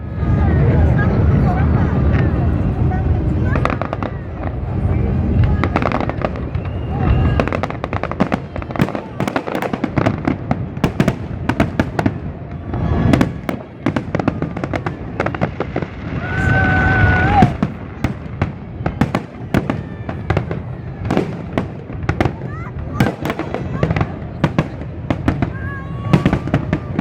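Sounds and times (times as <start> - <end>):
fireworks crackling and popping: 0.0 - 27.0
firework whistle: 5.8 - 9.7.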